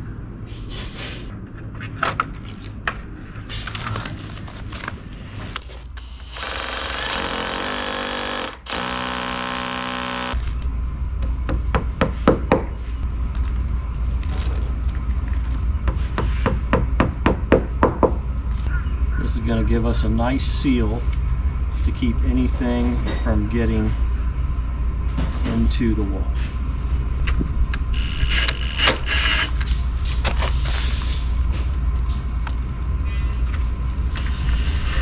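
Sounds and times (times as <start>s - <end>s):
power drill boring into brick: 6.0s - 10.4s, 27.8s - 29.5s, 34.1s - 35.0s.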